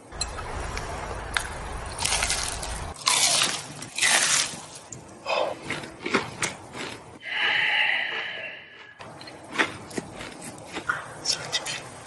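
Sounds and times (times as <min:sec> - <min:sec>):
crunchy food being chewed: 0:01.4 - 0:07.2, 0:08.8 - 0:11.9.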